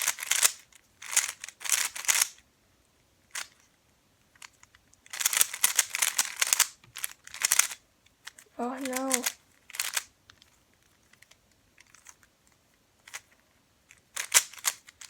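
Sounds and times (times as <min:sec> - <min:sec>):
puzzle cube clacking as turned: 0:00.0 - 0:02.4, 0:03.3 - 0:03.7, 0:04.3 - 0:15.0.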